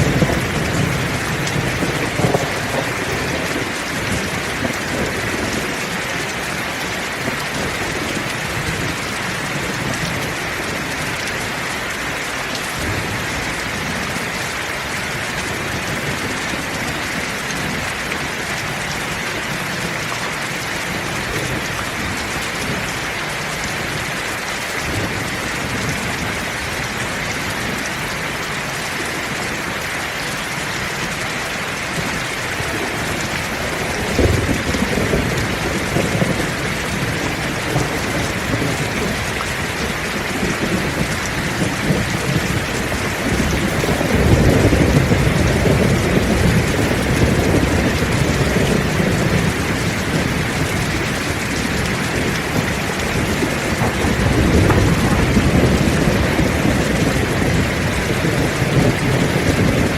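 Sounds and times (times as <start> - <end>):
thunder rumbling: 0.0 - 24.2, 32.0 - 59.9
heavy rain: 0.0 - 59.9.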